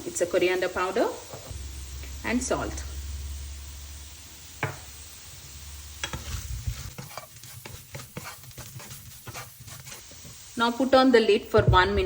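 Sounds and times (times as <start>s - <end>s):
potatoes sizzling in oil: 0.0s - 12.0s
spatula scraping pan: 6.0s - 10.4s.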